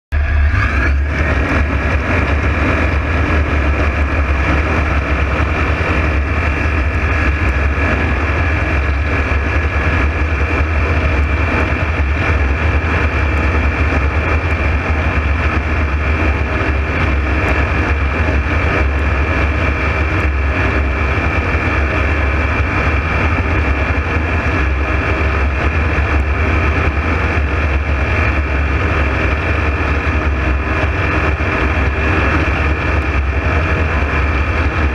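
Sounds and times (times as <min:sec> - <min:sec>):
engine drone: 0:00.0 - 0:34.9.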